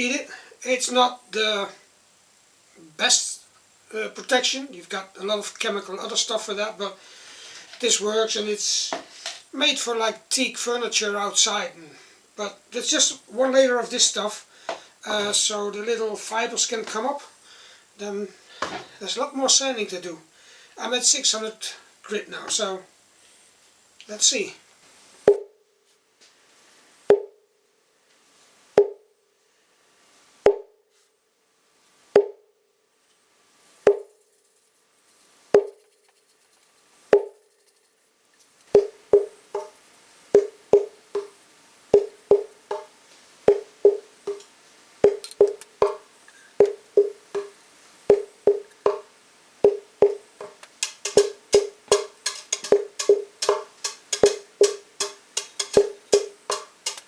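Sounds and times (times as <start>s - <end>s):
wooden hand drum beats: 33.9s - 34.3s, 35.6s - 36.0s, 37.2s - 37.7s, 38.8s - 42.9s, 43.5s - 44.4s, 45.0s - 46.0s, 46.6s - 57.0s.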